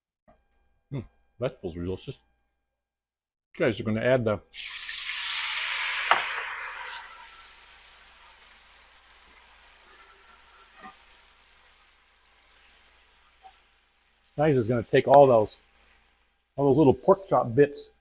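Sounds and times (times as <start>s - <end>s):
liquid sizzling in hot pan: 4.5s - 17.5s.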